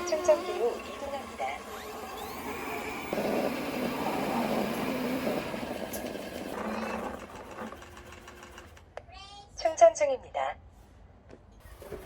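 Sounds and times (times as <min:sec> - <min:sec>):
robot vacuum motor whir: 0:00.0 - 0:08.6.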